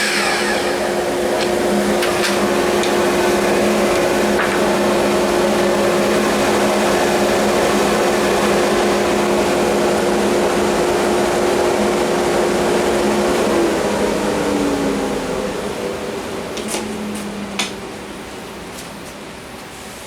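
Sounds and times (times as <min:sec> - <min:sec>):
power tool motor whining: 0:00.0 - 0:02.9.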